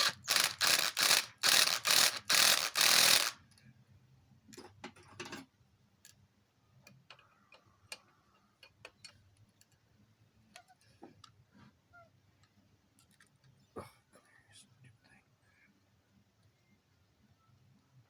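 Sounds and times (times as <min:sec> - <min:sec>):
wrench clicking on nuts: 0:00.0 - 0:03.4.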